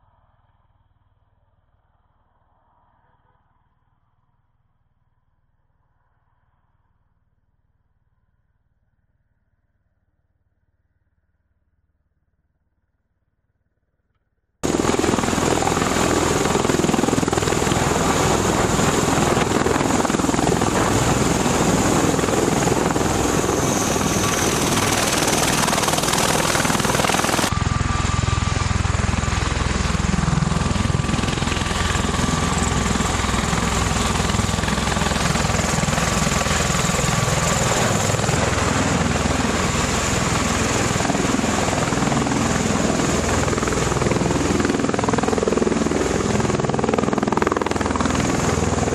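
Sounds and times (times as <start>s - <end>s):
aircraft engine noise: 14.6s - 48.9s.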